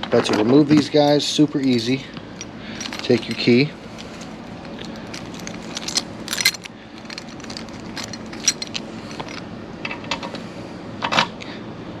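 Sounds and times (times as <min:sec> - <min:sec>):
metal keys jingling: 0:01.0 - 0:09.4.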